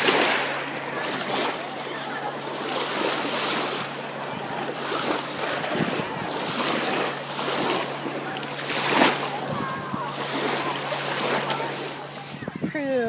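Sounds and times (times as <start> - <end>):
small waves washing onto beach: 0.0 - 12.6
wind on microphone: 2.9 - 13.0.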